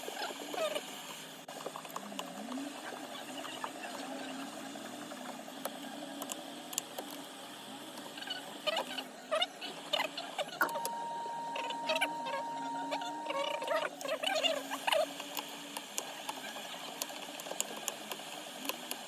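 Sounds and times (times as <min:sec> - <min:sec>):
steady high tone: 0:10.6 - 0:14.0.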